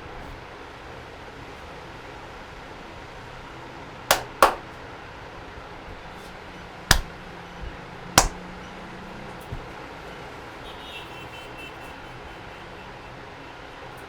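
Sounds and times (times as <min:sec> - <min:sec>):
sharp hand slaps: 0:04.1 - 0:04.6, 0:06.9 - 0:07.1, 0:08.2 - 0:08.4.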